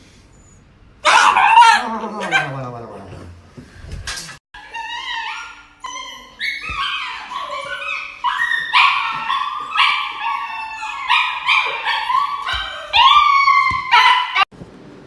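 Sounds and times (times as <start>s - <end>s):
dog whining and yelping: 4.6s - 14.5s.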